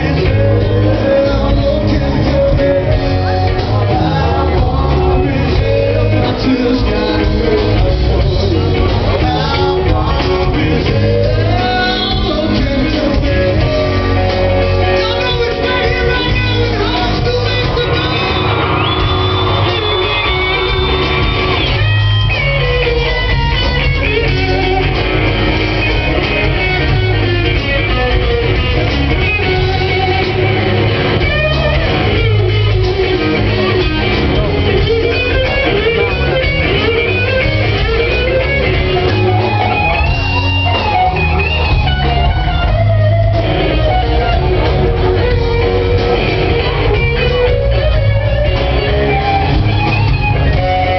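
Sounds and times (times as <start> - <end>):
electric guitar bending notes: 0.0 - 50.9
rock band playing: 0.0 - 50.9.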